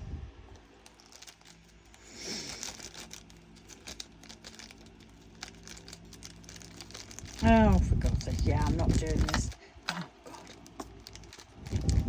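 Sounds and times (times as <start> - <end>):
plastic bag crinkling: 0.4 - 12.0.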